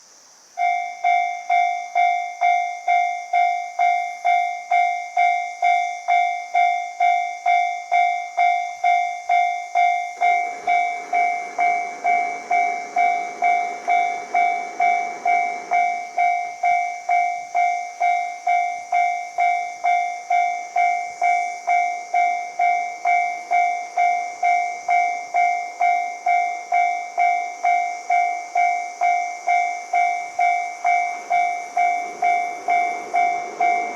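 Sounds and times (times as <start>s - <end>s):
level crossing alarm bell: 0.6s - 33.9s
rushing noise: 10.2s - 16.4s, 30.5s - 33.9s.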